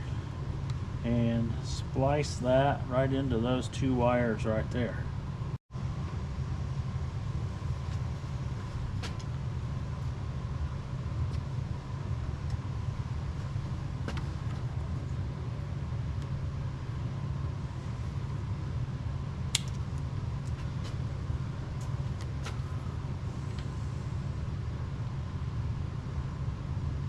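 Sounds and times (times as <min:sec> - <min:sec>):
steady low rumble: 0:00.0 - 0:27.0
clicks and snaps of wiring: 0:19.5 - 0:21.0.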